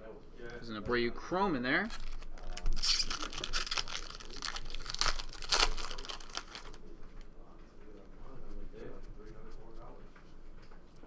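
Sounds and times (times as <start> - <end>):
wrapper crinkling and tearing: 1.9 - 6.8.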